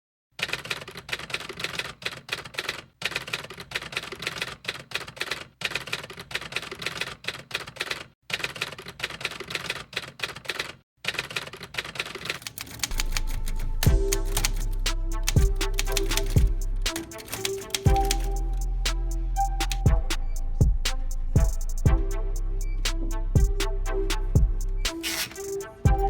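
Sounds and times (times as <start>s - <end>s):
manual typewriter keys clacking: 0.4s - 18.6s, 24.9s - 25.7s.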